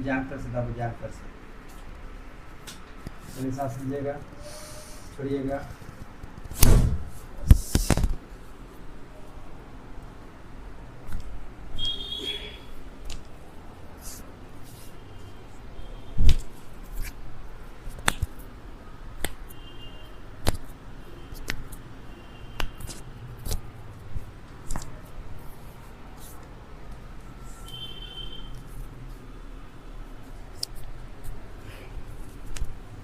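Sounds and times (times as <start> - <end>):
thud: 6.6 - 7.1.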